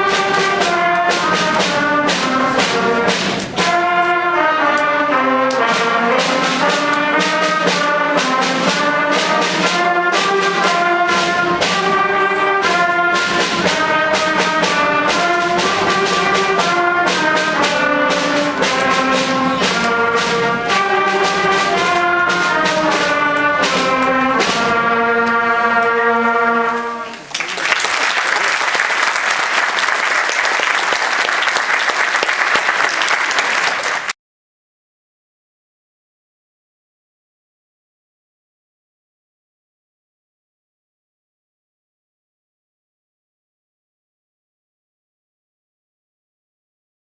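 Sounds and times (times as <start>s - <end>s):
brass ensemble playing: 0.0s - 27.6s.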